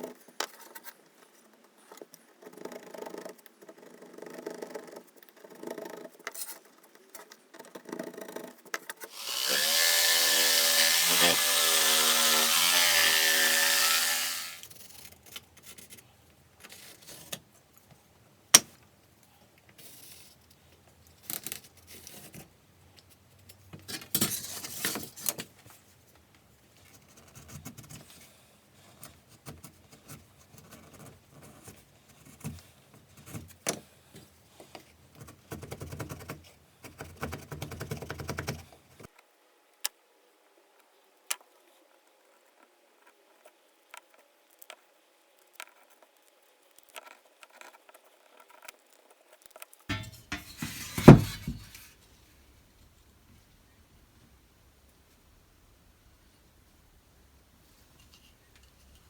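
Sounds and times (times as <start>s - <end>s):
power tool running: 9.2s - 14.6s
tools clicking and knocking: 49.9s - 51.9s
scraping and rubbing: 49.9s - 52.1s.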